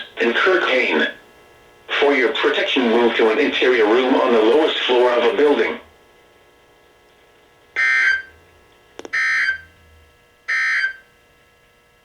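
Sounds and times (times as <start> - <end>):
small click: 8.7 - 9.2.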